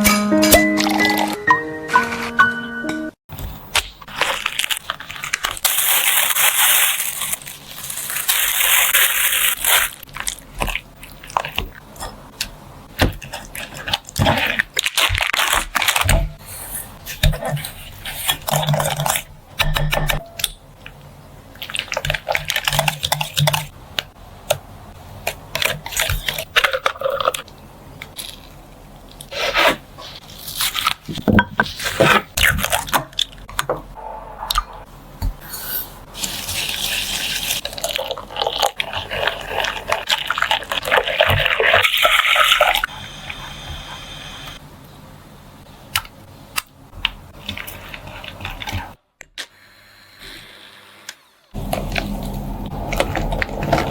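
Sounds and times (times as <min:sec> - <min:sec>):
scraping and crunching of food: 0:03.3 - 0:19.6, 0:20.8 - 0:24.2, 0:25.1 - 0:33.7, 0:36.1 - 0:44.0, 0:45.9 - 0:49.0, 0:51.5 - 0:53.9.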